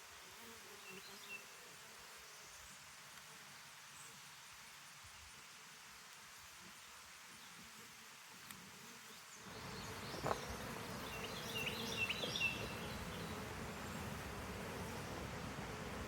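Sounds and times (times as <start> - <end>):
bees buzzing: 9.4 - 16.0.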